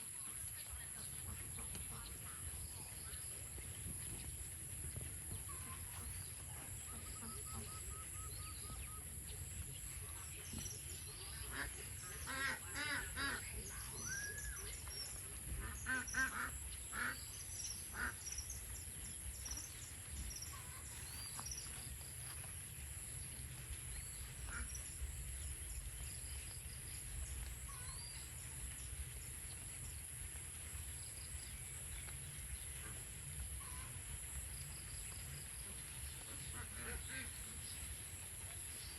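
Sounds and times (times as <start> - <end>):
steady high-pitched hiss: 0.0 - 38.9
ducks quacking: 5.5 - 8.8, 10.5 - 18.3, 24.4 - 24.8, 35.6 - 37.6.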